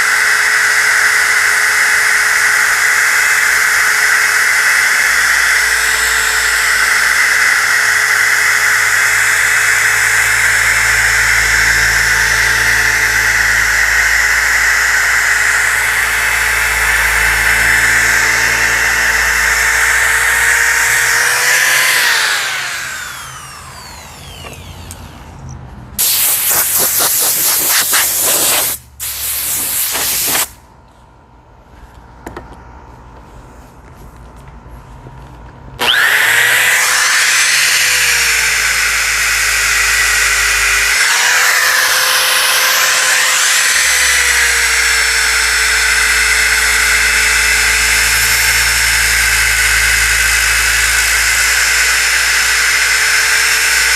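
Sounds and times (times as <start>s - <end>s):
disc sander running: 0.0s - 25.4s, 35.8s - 53.9s
loud hissing bursts: 26.0s - 30.6s.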